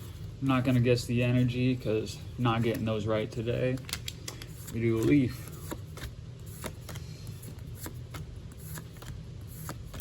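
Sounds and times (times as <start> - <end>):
trading cards clicking and snapping: 3.6 - 7.1.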